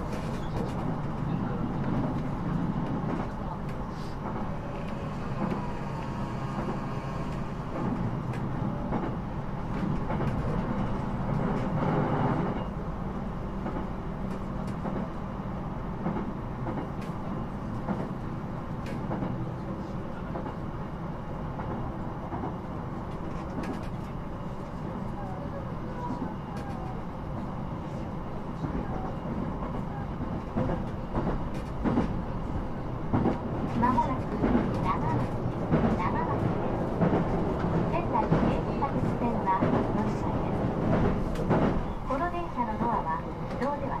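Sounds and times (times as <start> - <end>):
train wheels rumbling on rails: 0.0 - 44.0.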